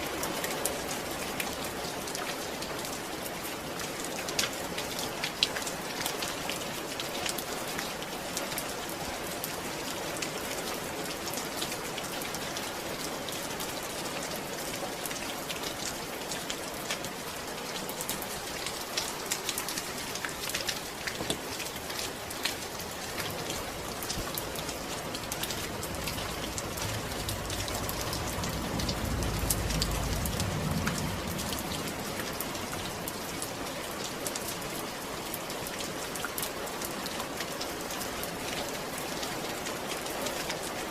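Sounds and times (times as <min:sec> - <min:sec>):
steady rainfall: 0:00.0 - 0:40.9
low rumble: 0:23.3 - 0:33.3.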